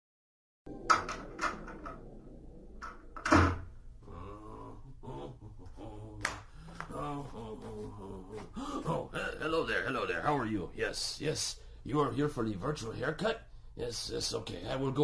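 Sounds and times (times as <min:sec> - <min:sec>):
door closing thump: 0:02.8 - 0:03.7.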